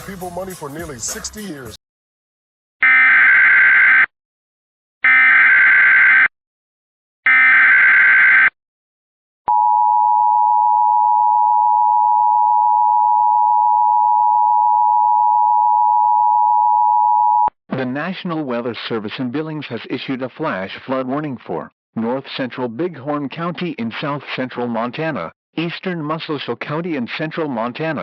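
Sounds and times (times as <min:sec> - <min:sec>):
loud dual-tone alarm: 0:02.8 - 0:04.1, 0:05.0 - 0:06.3, 0:07.3 - 0:08.6.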